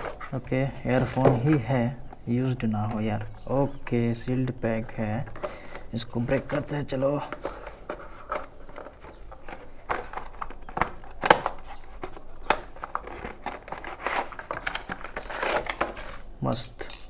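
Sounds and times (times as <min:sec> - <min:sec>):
packaging being torn open: 0:05.4 - 0:16.3.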